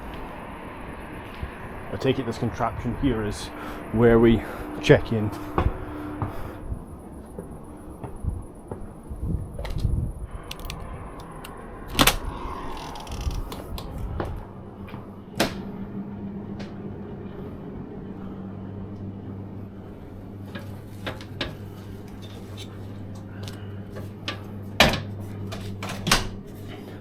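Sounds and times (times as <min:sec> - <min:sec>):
steady low hum: 0:00.0 - 0:27.0
door opening and shutting: 0:10.4 - 0:14.0, 0:25.6 - 0:26.4.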